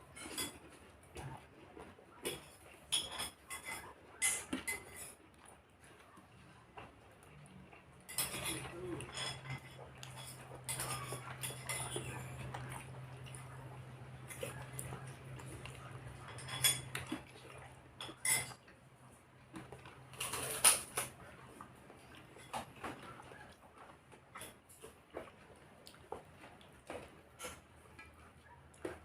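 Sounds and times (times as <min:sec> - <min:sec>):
cutlery clinking on a plate: 0:00.1 - 0:00.7, 0:02.3 - 0:05.2, 0:08.0 - 0:17.3, 0:18.0 - 0:18.6, 0:20.1 - 0:21.2.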